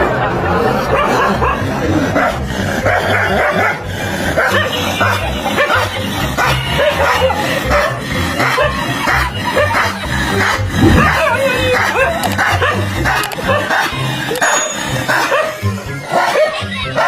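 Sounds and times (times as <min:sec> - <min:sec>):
dog barking and yipping: 0:06.4 - 0:08.8.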